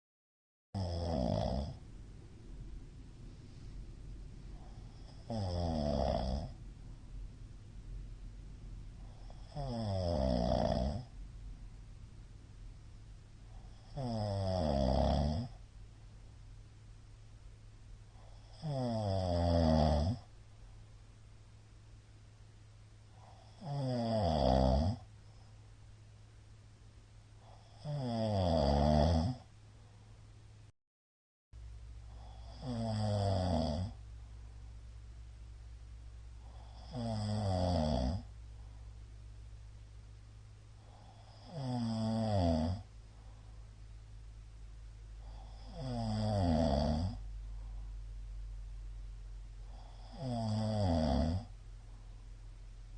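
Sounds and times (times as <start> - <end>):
man snoring: 0.8 - 1.8, 4.5 - 6.6, 9.0 - 11.1, 13.5 - 15.6, 18.2 - 20.3, 23.2 - 25.1, 27.4 - 29.5, 32.1 - 34.0, 36.4 - 38.3, 40.8 - 42.9, 45.2 - 47.2, 49.6 - 51.6
quiet breathing: 0.8 - 28.3, 29.2 - 30.7, 31.6 - 52.9.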